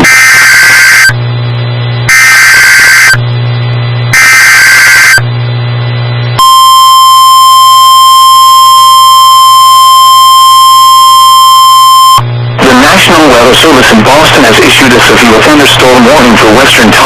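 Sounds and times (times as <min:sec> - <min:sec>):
steady warning alarm tone: 0:00.0 - 0:01.2, 0:02.1 - 0:03.2, 0:04.1 - 0:05.2, 0:06.4 - 0:13.5
warbling digital data tones: 0:06.4 - 0:13.6.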